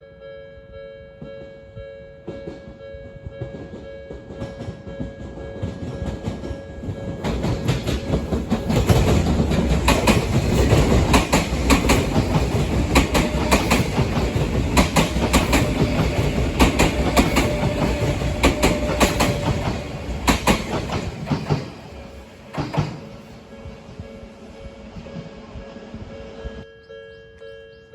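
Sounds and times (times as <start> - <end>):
two-tone crossing warning bell: 0.0 - 21.5, 23.2 - 27.9
electric train passing: 1.3 - 27.2
wheels clattering over rail joints: 2.3 - 23.5.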